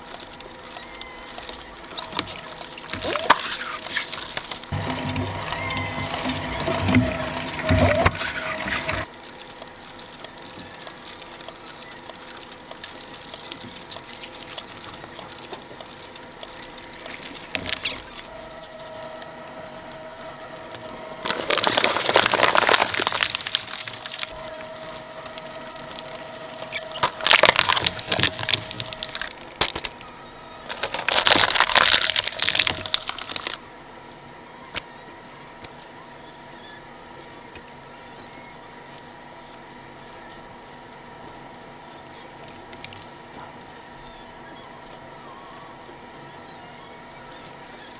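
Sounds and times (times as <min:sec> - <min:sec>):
shredder crackling and tearing: 0:00.0 - 0:36.2
shredder humming: 0:00.0 - 0:47.9.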